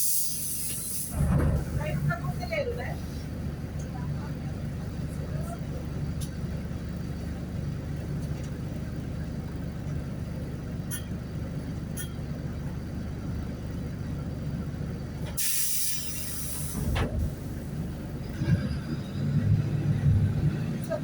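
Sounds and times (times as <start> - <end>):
compressed air hiss: 0.0 - 1.2, 15.4 - 17.0
bus diesel engine droning: 0.0 - 21.0.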